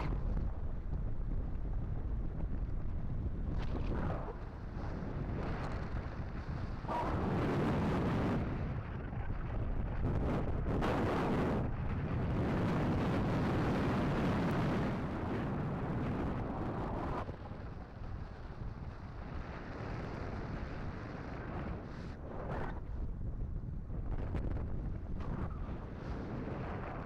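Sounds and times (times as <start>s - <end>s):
wind buffeting microphone: 0.0s - 27.0s.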